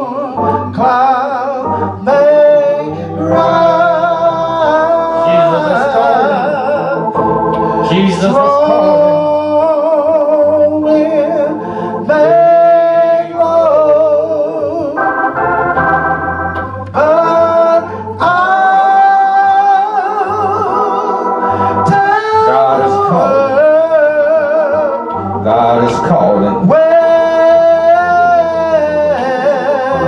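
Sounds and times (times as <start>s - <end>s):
organ chords: 0.0s - 30.0s
person singing a gospel hymn: 0.0s - 30.0s.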